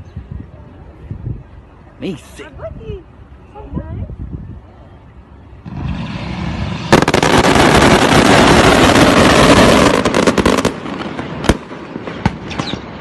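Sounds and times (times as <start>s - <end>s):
firework bang: 5.7s - 13.0s
firework crackling pops: 5.7s - 13.0s
firework hiss: 5.7s - 13.0s.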